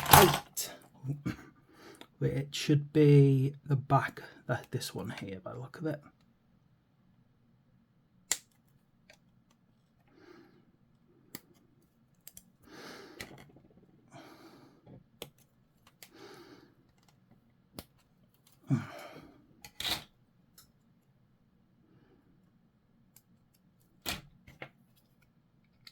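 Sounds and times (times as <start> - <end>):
clippers snipping plastic: 0.0 - 0.5
plastic parts rustling: 0.0 - 0.6.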